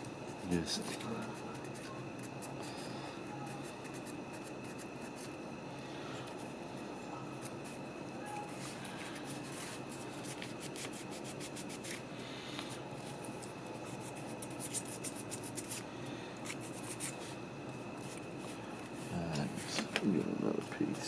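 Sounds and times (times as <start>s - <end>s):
faint steady hum: 0.0s - 21.0s
scratching and rubbing strokes: 8.4s - 12.0s, 13.0s - 17.4s.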